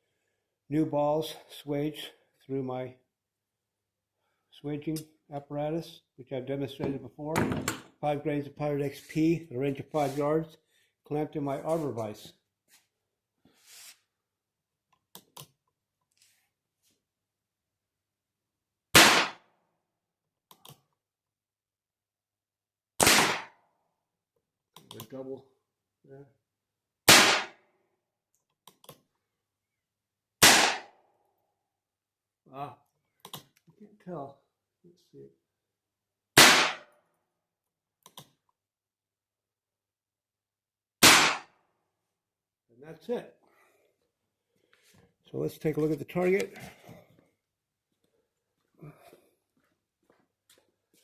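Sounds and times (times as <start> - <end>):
revolver gunshots with ringing tail: 19.0 - 19.4, 23.0 - 23.5, 27.1 - 27.6, 30.4 - 30.9, 36.4 - 36.9, 41.0 - 41.5.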